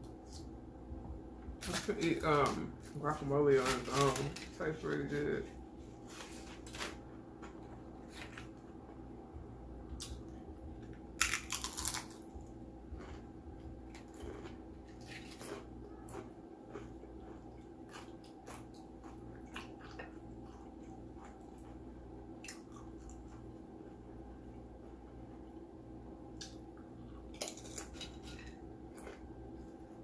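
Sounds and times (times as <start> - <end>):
crunching chips: 1.6 - 5.4, 11.2 - 21.8, 27.2 - 30.0.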